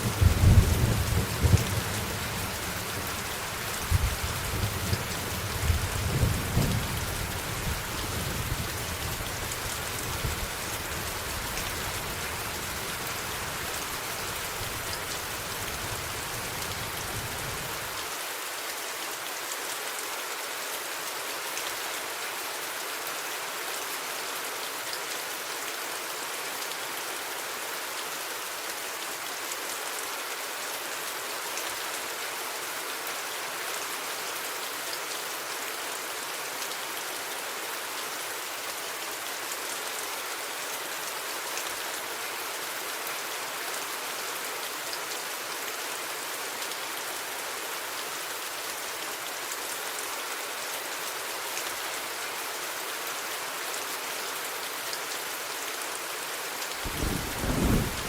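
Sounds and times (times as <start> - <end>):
steady rain hiss: 0.0 - 58.0
rolling thunder: 56.9 - 58.0.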